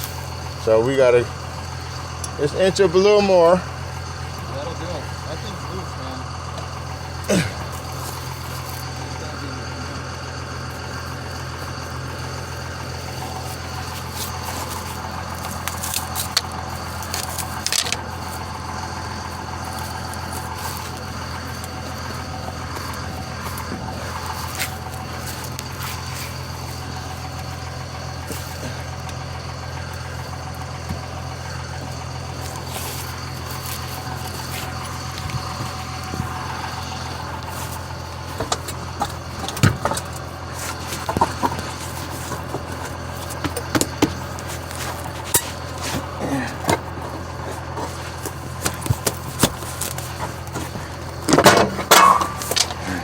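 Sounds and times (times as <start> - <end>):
knocks and clanks of wheel: 0.0 - 53.0
vehicle engine humming: 0.0 - 53.0
squeaky scrape: 39.4 - 51.0.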